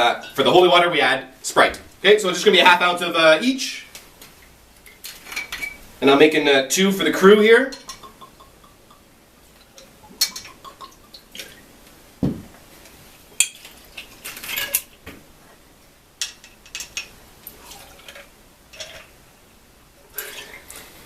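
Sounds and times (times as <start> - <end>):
bottles and glasses clinking: 5.3 - 5.8, 7.7 - 11.2
dull knock: 12.2 - 12.5.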